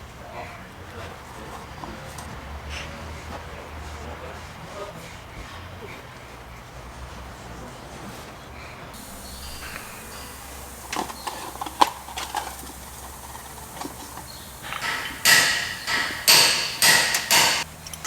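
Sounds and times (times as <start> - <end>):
light metal clicks: 9.0 - 18.0.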